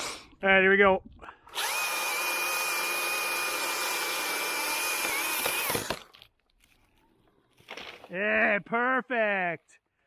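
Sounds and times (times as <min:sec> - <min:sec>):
chainsaw cutting at full throttle: 0:01.5 - 0:06.0.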